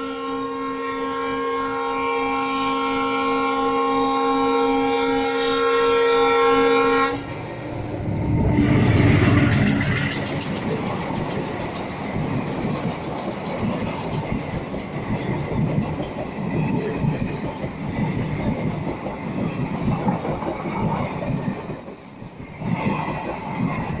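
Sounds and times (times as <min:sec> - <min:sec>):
train rumble: 0:05.0 - 0:24.0
train wheels clattering over rail joints: 0:08.4 - 0:24.0.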